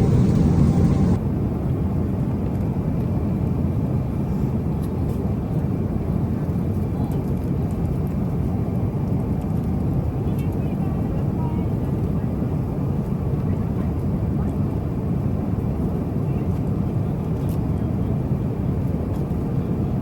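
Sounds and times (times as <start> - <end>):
jet airliner cabin rumble: 0.0 - 20.0.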